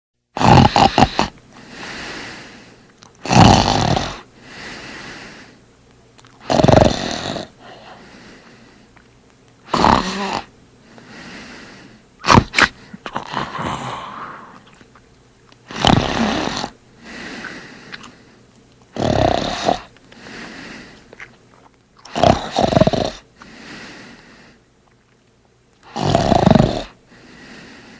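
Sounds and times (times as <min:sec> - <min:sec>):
man snoring loudly: 0:00.4 - 0:02.3, 0:03.2 - 0:04.3, 0:06.4 - 0:08.0, 0:09.7 - 0:10.5, 0:12.2 - 0:14.6, 0:15.7 - 0:16.8, 0:19.0 - 0:19.9, 0:22.1 - 0:23.2, 0:25.9 - 0:27.0.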